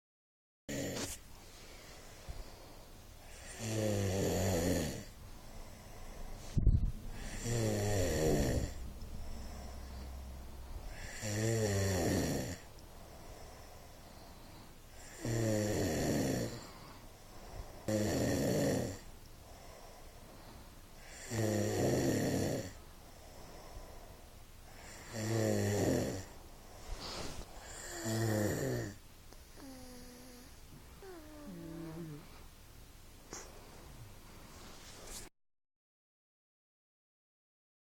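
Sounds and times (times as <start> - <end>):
person snoring: 0.7 - 1.2, 3.3 - 5.1, 7.1 - 10.1, 10.9 - 12.7, 15.0 - 17.0, 17.9 - 19.8, 21.0 - 22.8, 24.7 - 26.3, 27.0 - 32.4.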